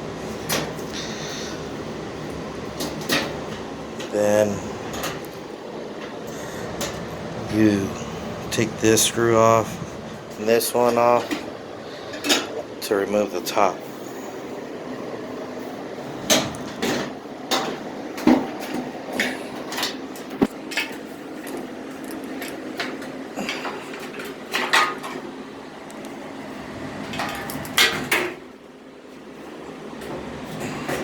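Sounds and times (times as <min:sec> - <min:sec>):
steady background hum: 0:00.0 - 0:31.0
metallic clanks and knocks: 0:27.1 - 0:28.4.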